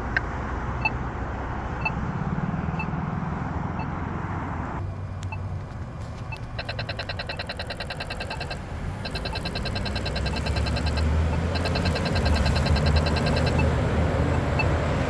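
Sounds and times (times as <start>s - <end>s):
pedestrian signal ticking: 0.0s - 1.1s, 1.7s - 2.1s, 2.7s - 3.0s, 4.8s - 15.0s
road traffic hum: 0.0s - 15.0s.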